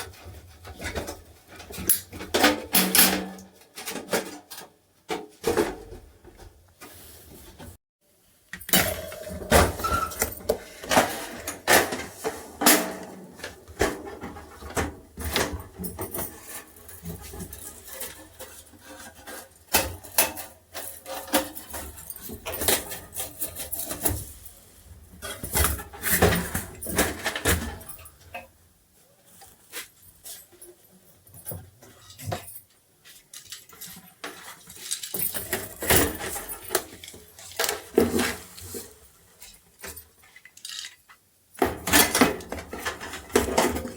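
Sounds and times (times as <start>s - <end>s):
clicks and clatter of heater parts: 0.0s - 6.9s, 8.5s - 28.5s, 29.3s - 43.9s.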